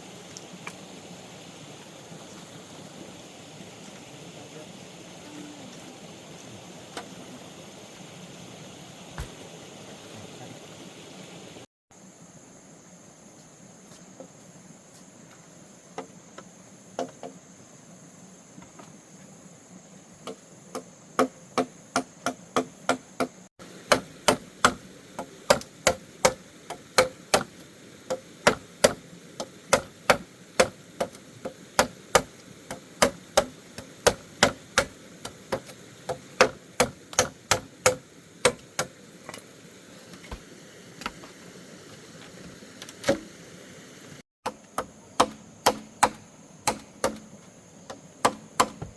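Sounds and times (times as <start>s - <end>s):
hand tool striking bamboo: 20.2s - 39.5s, 42.8s - 43.3s, 44.5s - 48.9s.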